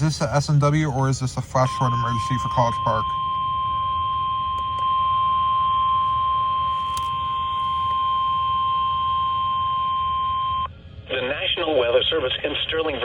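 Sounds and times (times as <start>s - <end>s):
low hum: 0.0s - 13.0s
steady high alarm beep: 1.4s - 10.7s.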